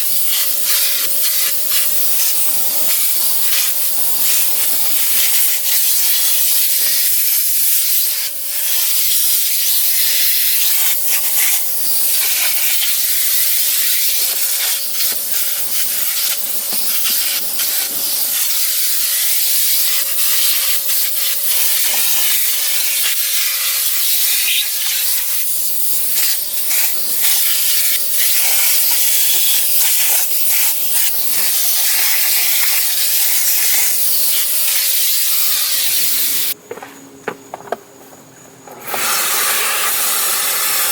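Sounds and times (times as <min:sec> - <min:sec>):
vacuum cleaner running: 0:38.6 - 0:40.9.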